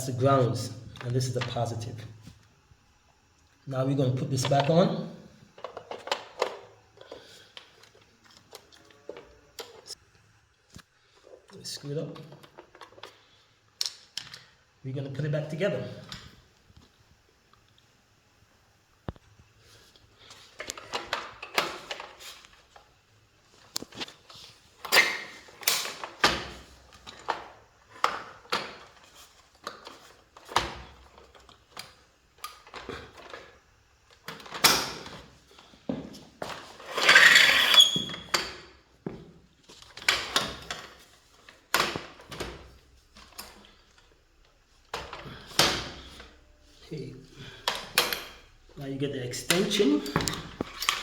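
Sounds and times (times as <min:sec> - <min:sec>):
plastic parts clicking and knocking: 0:05.5 - 0:09.9.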